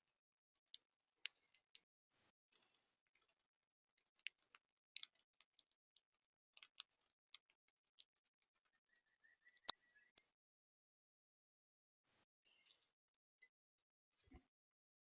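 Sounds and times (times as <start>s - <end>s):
small birds chirping: 8.6s - 10.4s.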